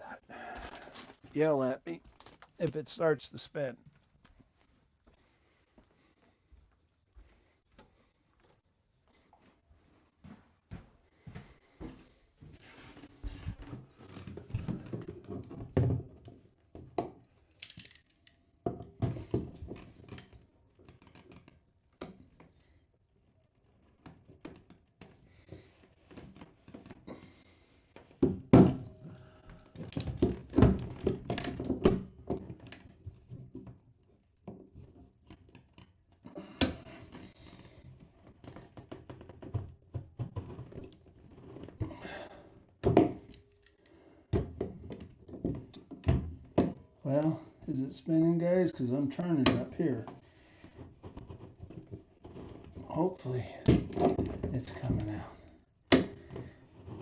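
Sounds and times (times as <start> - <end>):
hand tools scraping plastic drain: 49.2 - 57.0.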